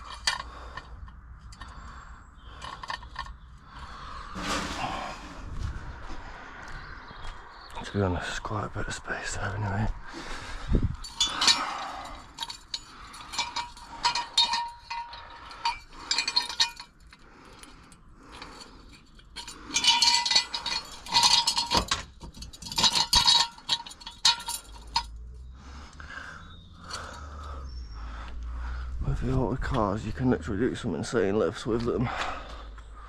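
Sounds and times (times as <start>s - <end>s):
metal clinks and clanks: 0.0s - 1.8s, 2.4s - 3.6s, 4.3s - 5.4s, 10.9s - 25.4s, 26.6s - 27.6s.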